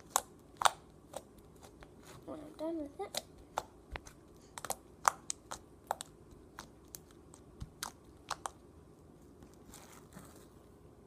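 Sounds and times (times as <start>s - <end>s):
slime clicking and popping: 0.0s - 1.8s, 3.1s - 8.6s.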